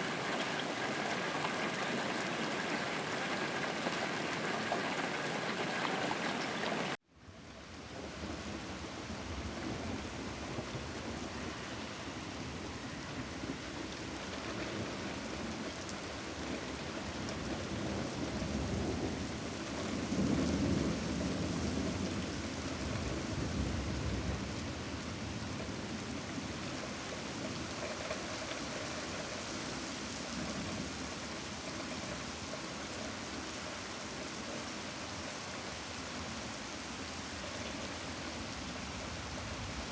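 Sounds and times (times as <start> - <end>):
steady rain: 0.0 - 39.9
low rumble of thunder: 16.4 - 26.6.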